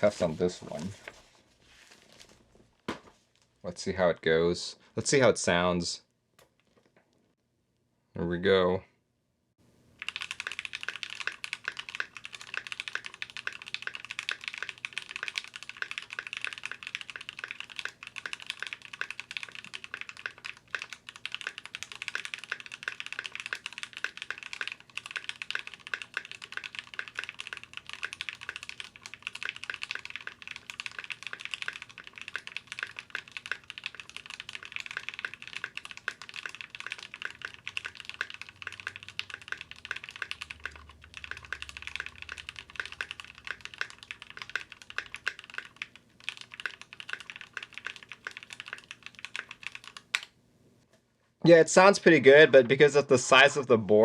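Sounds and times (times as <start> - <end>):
fast typing on mechanical keyboard: 10.0 - 50.3.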